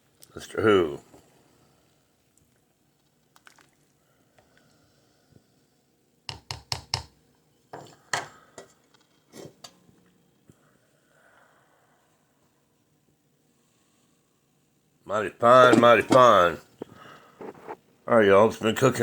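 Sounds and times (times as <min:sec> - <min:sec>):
cookware clattering: 0:15.6 - 0:16.4.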